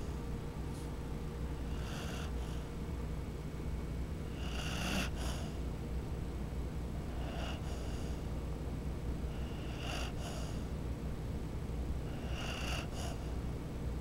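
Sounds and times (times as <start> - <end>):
dog snoring: 1.5 - 2.7, 4.3 - 5.6, 7.1 - 8.3, 9.3 - 10.7, 12.0 - 13.4.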